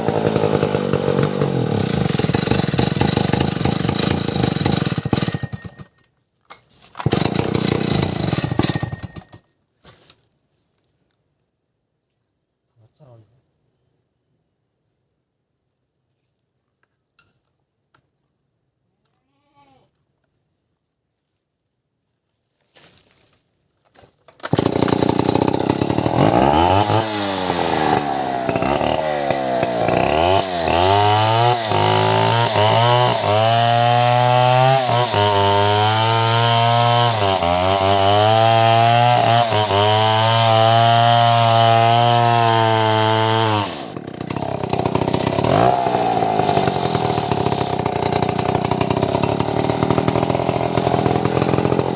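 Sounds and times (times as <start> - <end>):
chainsaw revving and cutting wood: 0.0 - 6.0, 7.0 - 9.4, 24.3 - 51.9.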